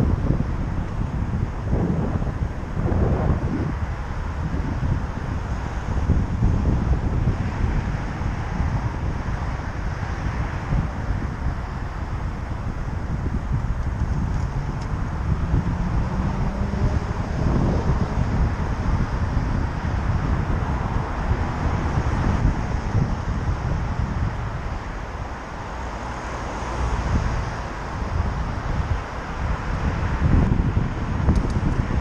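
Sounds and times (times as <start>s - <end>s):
road traffic: 0.0s - 32.0s
wind rumbling on microphone: 0.0s - 32.0s.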